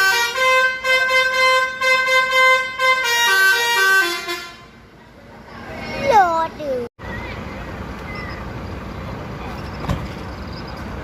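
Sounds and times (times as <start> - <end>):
musical bus air horn: 0.0 - 4.8.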